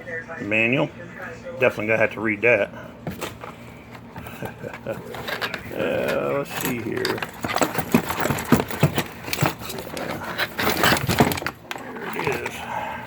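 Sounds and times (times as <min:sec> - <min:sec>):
knocks and clicks of handling: 0:03.0 - 0:12.6
packaging crinkling and rustling: 0:03.1 - 0:12.6.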